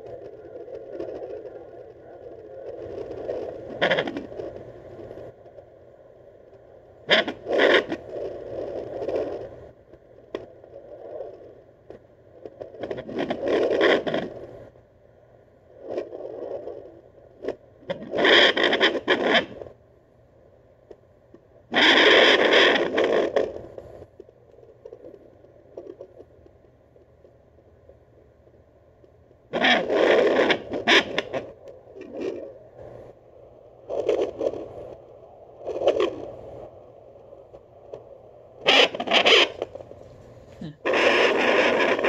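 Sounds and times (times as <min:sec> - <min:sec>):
scraping bursts: 0:38.7 - 0:42.0.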